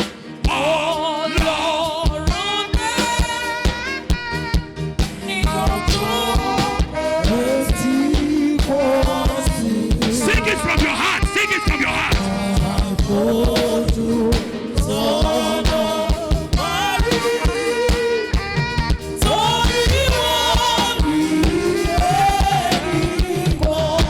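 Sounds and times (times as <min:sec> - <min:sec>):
gospel song with band: 0:00.0 - 0:24.0
drum beat: 0:01.4 - 0:24.0.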